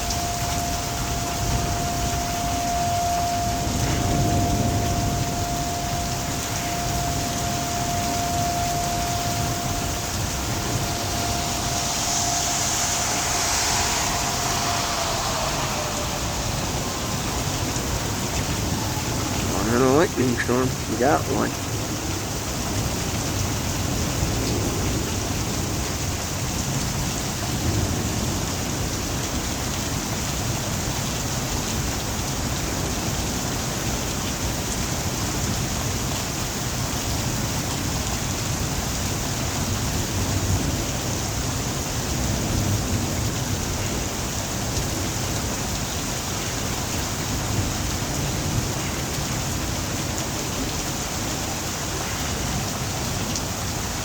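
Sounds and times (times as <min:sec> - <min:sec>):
thunder rumbling: 0:00.0 - 0:23.0
heavy rain falling: 0:00.0 - 0:54.0.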